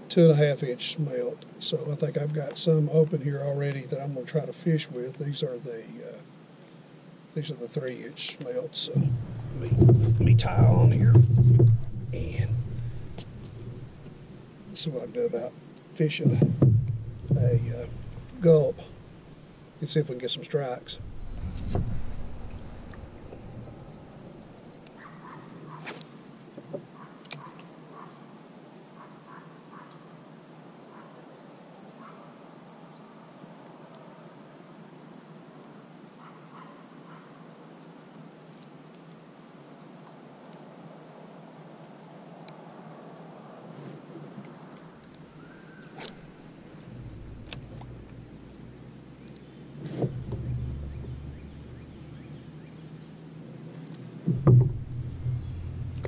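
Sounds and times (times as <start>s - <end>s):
faint clicks and knocks: 8.4s - 14.3s, 16.2s - 19.4s, 53.9s - 56.0s
insect trilling: 8.8s - 28.3s, 44.0s - 49.6s, 54.3s - 56.0s.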